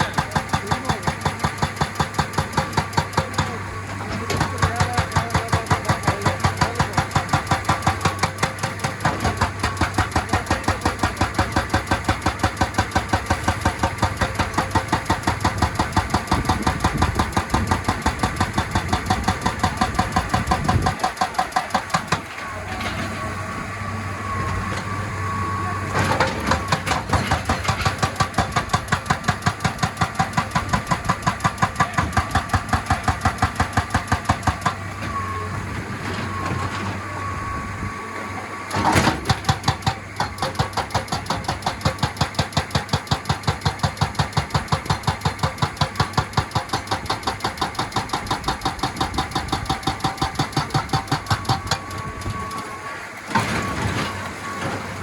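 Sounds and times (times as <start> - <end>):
hydraulic breaker hammering rock: 0.0 - 23.4, 24.3 - 37.0, 38.7 - 55.0
diesel engine running: 0.0 - 55.0.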